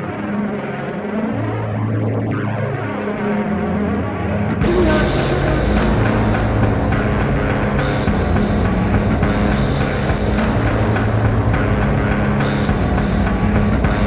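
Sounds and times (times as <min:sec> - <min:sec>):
low bass notes: 0:00.0 - 0:14.0.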